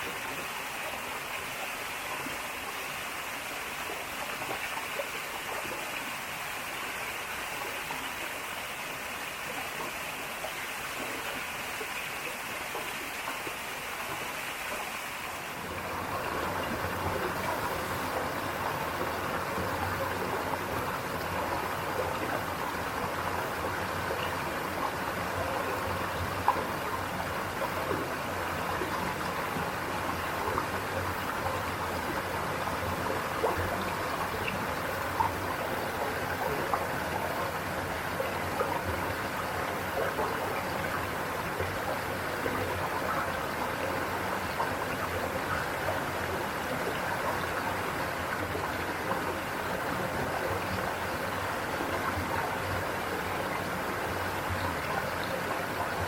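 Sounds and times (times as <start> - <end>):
stream running over rocks: 0.0 - 56.0.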